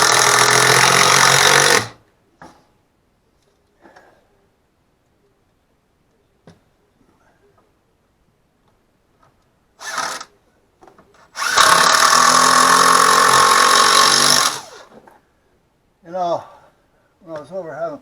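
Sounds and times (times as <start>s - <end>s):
power drill running: 0.0s - 2.0s, 9.8s - 10.3s, 11.4s - 14.9s.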